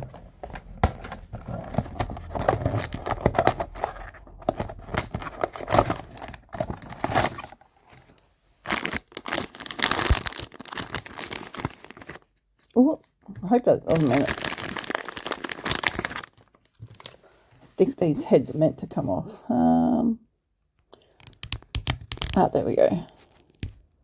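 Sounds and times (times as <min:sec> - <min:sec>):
plastic wrapper crinkling and tearing: 0:00.5 - 0:07.9, 0:08.6 - 0:12.8, 0:13.7 - 0:17.2, 0:21.0 - 0:24.0.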